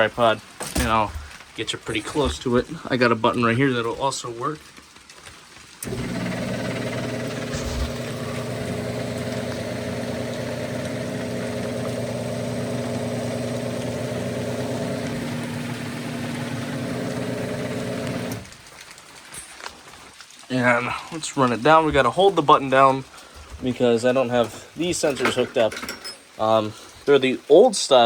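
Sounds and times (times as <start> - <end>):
garage door opener motor humming: 5.8 - 18.6.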